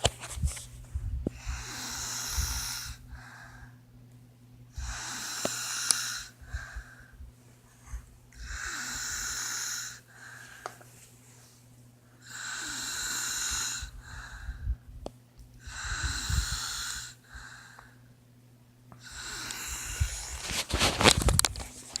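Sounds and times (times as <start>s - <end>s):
person snoring: 1.4s - 3.0s, 4.8s - 6.7s, 8.4s - 10.1s, 12.2s - 14.4s, 15.6s - 17.5s, 19.0s - 20.7s.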